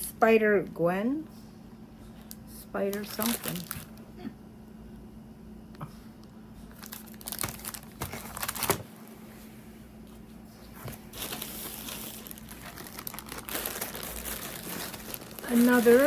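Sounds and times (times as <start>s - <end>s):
packaging crinkling and rustling: 2.2s - 4.0s, 6.2s - 9.0s, 10.7s - 16.0s.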